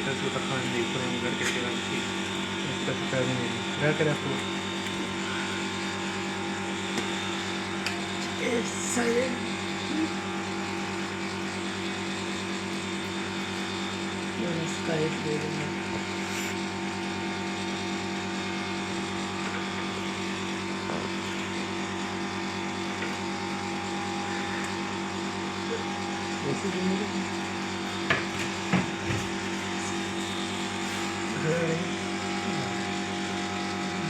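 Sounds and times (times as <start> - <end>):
steady mechanical hum: 0.0 - 34.0.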